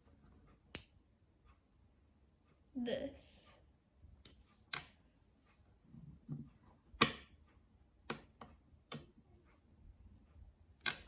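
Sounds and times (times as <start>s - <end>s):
magnetic balls snapping together: 4.2s - 5.0s, 8.0s - 9.2s, 10.8s - 11.0s.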